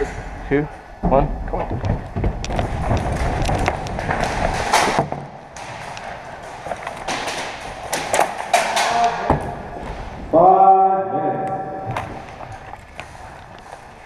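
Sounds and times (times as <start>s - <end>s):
dense rumble: 0.0s - 7.1s
knocks: 1.0s - 10.1s
heavy footfalls: 1.0s - 10.4s
gear jostling against microphone: 1.5s - 5.0s.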